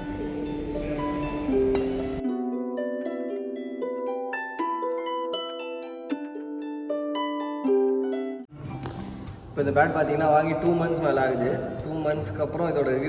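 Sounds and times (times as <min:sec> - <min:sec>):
plucked harp-like music: 0:00.0 - 0:09.6.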